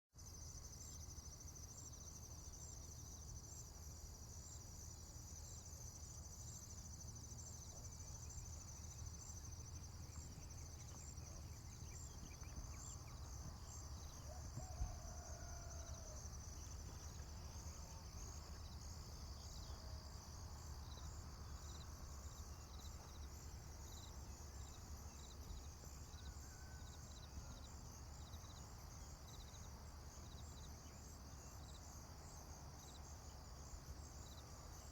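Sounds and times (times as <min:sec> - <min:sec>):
insects chirping: 0:00.2 - 0:34.9.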